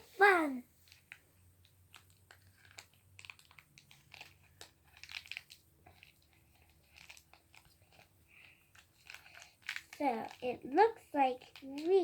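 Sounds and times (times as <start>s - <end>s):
plastic bag crinkling: 0.8s - 12.0s.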